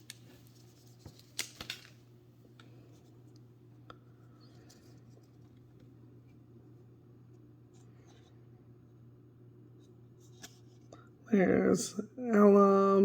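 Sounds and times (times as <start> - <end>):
trading cards rustling: 0.0 - 2.0
steady low hum: 0.0 - 13.0.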